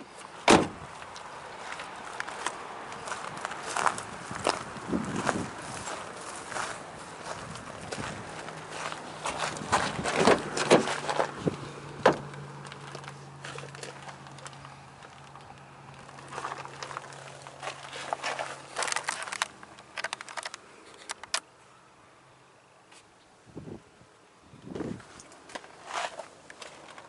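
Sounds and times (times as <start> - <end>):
clicks and rustles: 9.3 - 21.5, 25.0 - 27.0.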